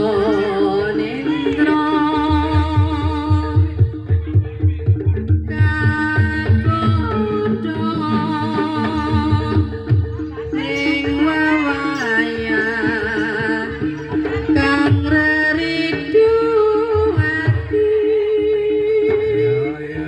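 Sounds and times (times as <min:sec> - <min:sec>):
low drum beats: 0:00.0 - 0:20.0
person singing wavering notes: 0:00.0 - 0:20.0
repeating melodic line: 0:03.9 - 0:16.5.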